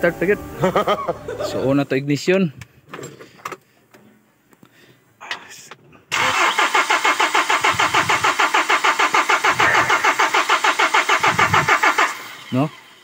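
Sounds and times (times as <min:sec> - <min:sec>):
diesel engine cranking: 0:06.1 - 0:13.0.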